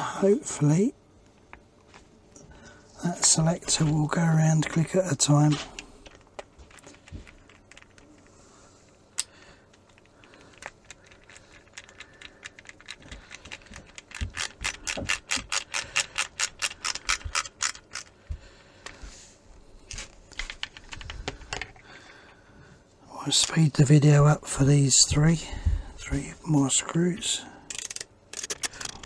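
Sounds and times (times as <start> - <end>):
screwdriver ratchet clicking: 13.9 - 18.1, 27.7 - 29.0.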